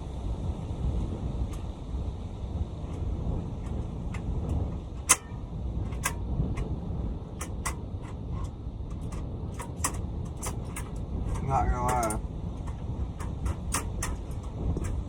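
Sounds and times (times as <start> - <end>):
steady low rumble: 0.0 - 15.0
sharp clicks and taps: 7.4 - 15.0.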